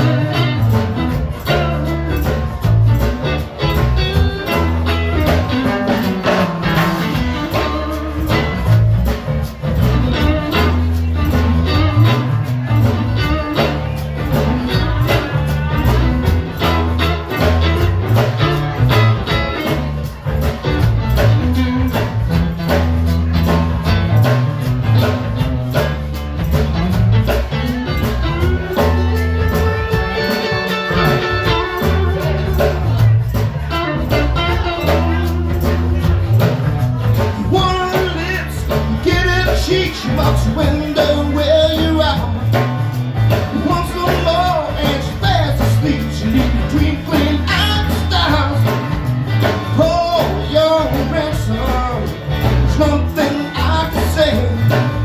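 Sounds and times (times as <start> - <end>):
bass line: 0.0 - 55.0
drum beat: 0.0 - 55.0
electric guitar: 0.0 - 55.0.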